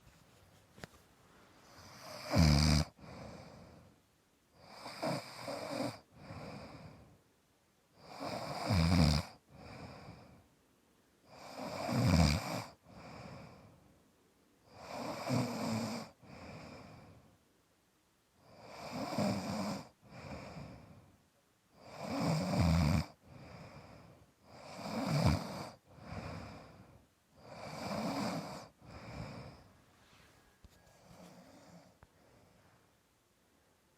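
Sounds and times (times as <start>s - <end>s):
loud rasping snoring: 1.7s - 3.7s, 4.6s - 7.0s, 8.0s - 10.2s, 11.3s - 13.6s, 14.7s - 17.1s, 18.5s - 20.9s, 21.8s - 23.9s, 24.5s - 26.8s, 27.4s - 29.7s
soft breath out: 23.2s - 24.3s, 28.6s - 33.0s.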